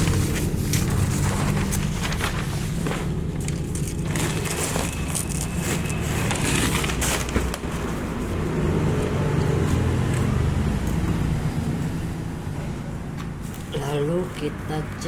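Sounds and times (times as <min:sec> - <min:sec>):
rustling: 0:00.0 - 0:10.4
vehicle engine humming: 0:00.0 - 0:15.0.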